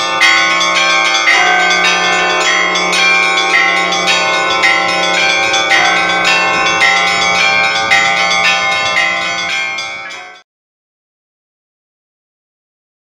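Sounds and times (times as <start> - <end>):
large bell hum: 0.0 - 10.4
small bells ringing: 0.0 - 10.4.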